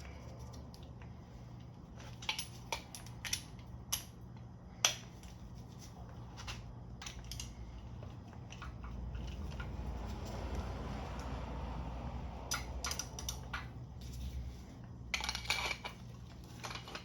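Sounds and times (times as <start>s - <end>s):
hand tool ratchet clicking: 12.5s - 13.7s.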